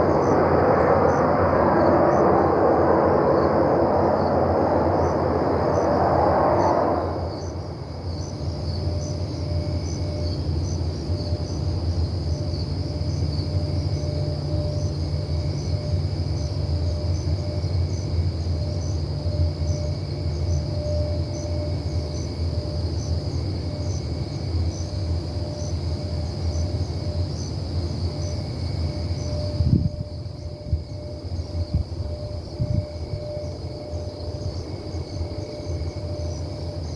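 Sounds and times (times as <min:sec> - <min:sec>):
loud roar from the sky: 0:00.0 - 0:10.2
steady low hum: 0:00.0 - 0:19.8
crickets chirping: 0:00.0 - 0:36.9
low wavering rumble from the sky: 0:00.0 - 0:36.9.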